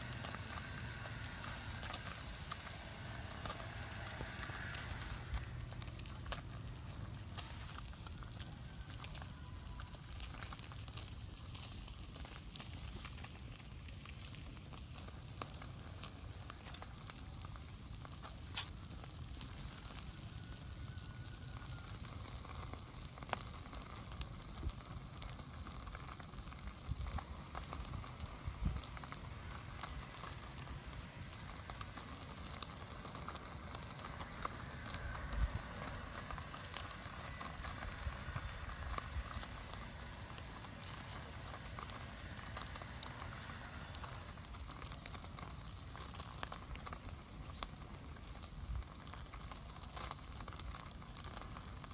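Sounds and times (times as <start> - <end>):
food sizzling over fire: 0.0 - 51.9.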